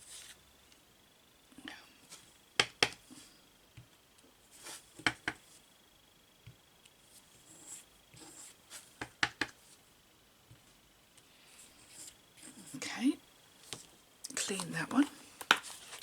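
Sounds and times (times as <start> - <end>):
stamp tapping on card: 9.0 - 9.6
paper rustling: 15.5 - 16.0.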